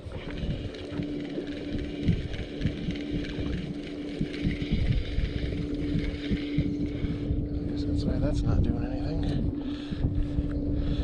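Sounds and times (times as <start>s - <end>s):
boat motor humming: 0.0s - 11.0s
wind buffeting microphone: 0.0s - 11.0s.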